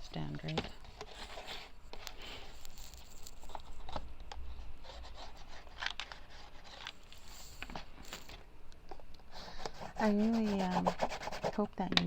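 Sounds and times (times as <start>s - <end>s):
cardboard scratching and rubbing: 0.8s - 4.0s, 9.7s - 11.6s.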